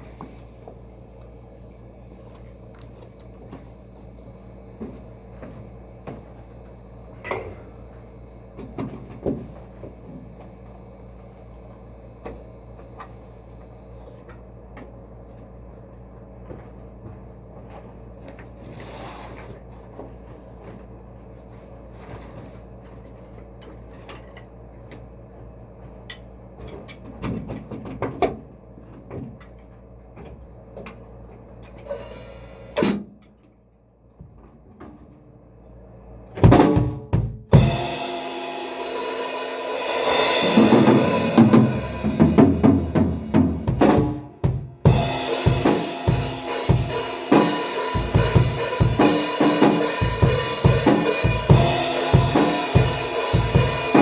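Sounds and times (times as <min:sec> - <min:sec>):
drum kit played loudly: 0:36.4 - 0:54.0
band playing: 0:37.6 - 0:54.0.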